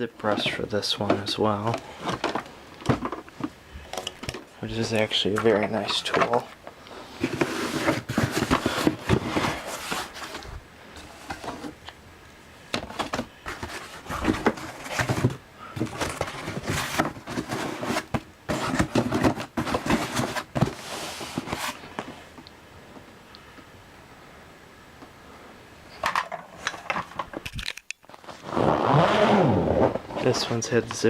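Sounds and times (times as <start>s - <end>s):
vacuum cleaner parts clattering: 0.2s - 6.6s, 7.2s - 11.9s, 12.7s - 22.1s, 26.0s - 27.9s.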